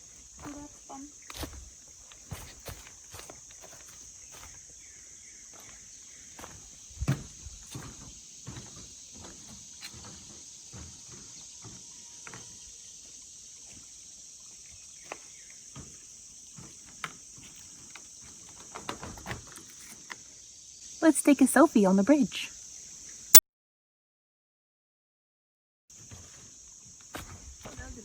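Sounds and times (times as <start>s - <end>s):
footsteps on woodland trail: 0.0s - 20.3s, 25.9s - 28.0s
high-pitched insect chorus: 0.0s - 23.4s, 25.9s - 28.0s.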